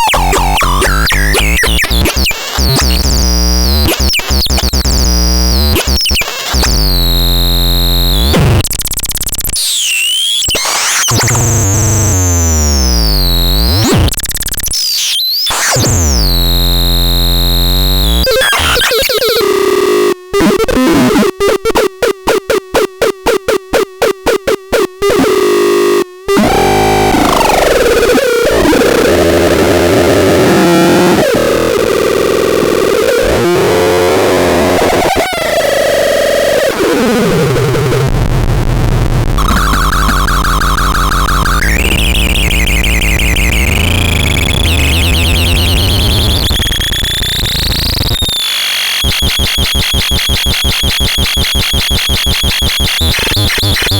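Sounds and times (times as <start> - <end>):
buzzy synthesizer tones: 0.0 - 8.7, 20.4 - 53.9.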